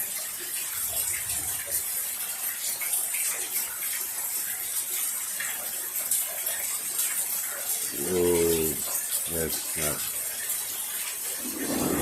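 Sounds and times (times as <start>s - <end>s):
drips and splashes: 0.0s - 12.0s
heavy rain hiss: 7.8s - 12.0s.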